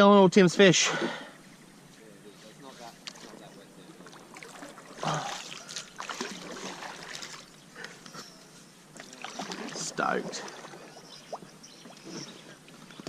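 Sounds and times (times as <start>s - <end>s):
water splashing at kayak side: 3.0s - 7.5s, 8.9s - 12.2s.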